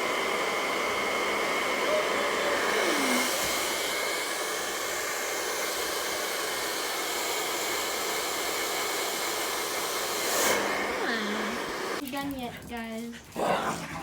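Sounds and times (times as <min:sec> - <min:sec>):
hair dryer blowing: 0:00.0 - 0:12.0.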